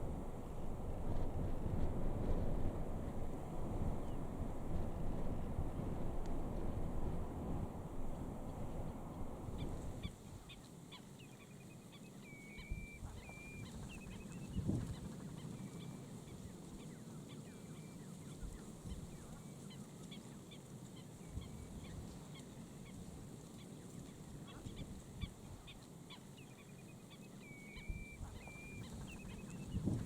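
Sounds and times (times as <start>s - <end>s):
low background rumble: 0.0s - 10.1s
wetland birds calling: 11.0s - 16.0s, 26.1s - 30.0s.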